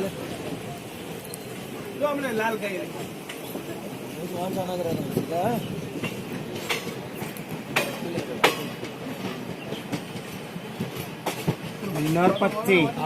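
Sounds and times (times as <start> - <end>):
train rumbling on rails: 0.0 - 13.0
wheel clacks over rail joints: 2.1 - 3.8, 4.5 - 13.0.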